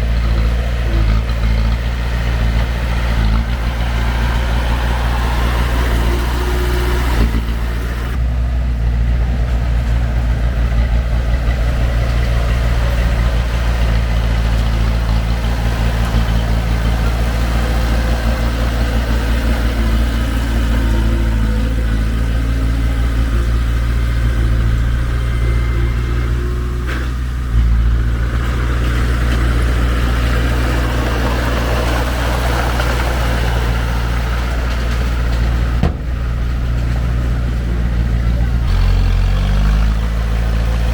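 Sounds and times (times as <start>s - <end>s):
heavy diesel engine droning: 0.0s - 40.9s
sharp knock: 35.8s - 36.5s.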